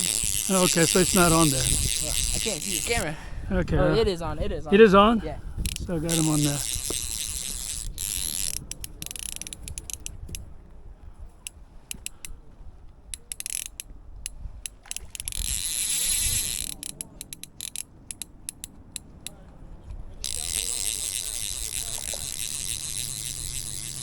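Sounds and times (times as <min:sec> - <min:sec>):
fly reel drag ratcheting: 0:00.0 - 0:03.1, 0:05.6 - 0:10.4, 0:13.2 - 0:19.4, 0:20.2 - 0:24.0.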